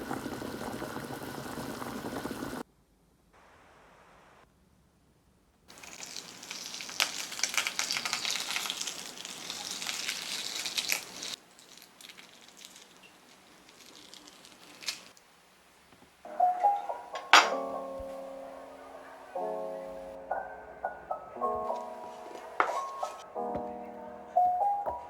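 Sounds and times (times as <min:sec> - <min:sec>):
food sizzling in frying pan: 0:00.0 - 0:02.6, 0:05.7 - 0:15.2.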